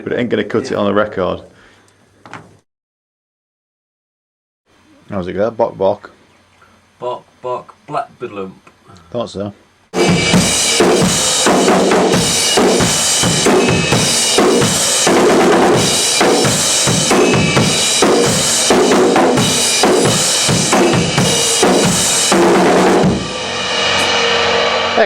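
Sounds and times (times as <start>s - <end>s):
acoustic drum kit rock beat: 10.0s - 25.0s.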